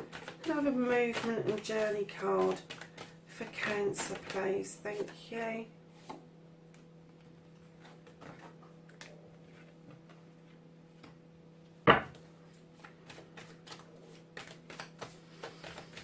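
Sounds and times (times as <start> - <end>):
cards clicking: 12.8 - 16.0.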